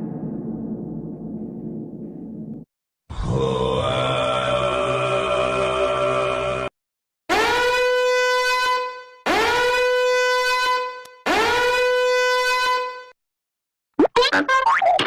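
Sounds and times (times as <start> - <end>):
horn blasts: 7.3 - 13.2.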